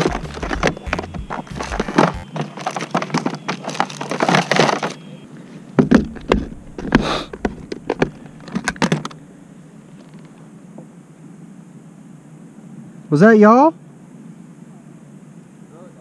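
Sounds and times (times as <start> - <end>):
rapid knocks and cracks: 0.0 - 5.0
heavier knocks: 5.8 - 8.9.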